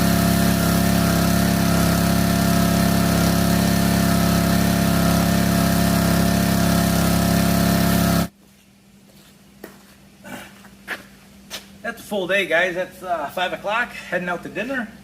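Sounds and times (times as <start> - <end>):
small engine running: 0.0 - 8.3.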